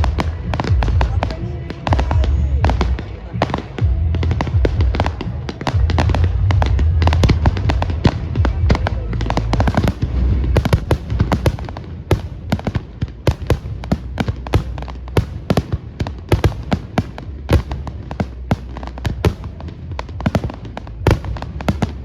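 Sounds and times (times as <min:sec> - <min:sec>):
firework crackle and pops: 0:00.0 - 0:22.0
firework shells booming: 0:07.1 - 0:22.0.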